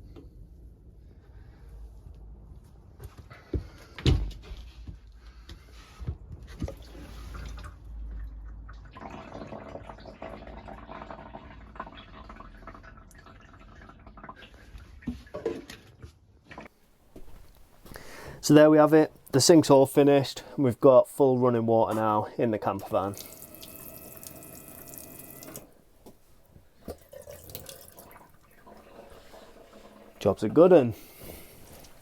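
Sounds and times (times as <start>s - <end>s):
water trickling into metal sink: 22.9s - 25.6s, 26.8s - 30.8s.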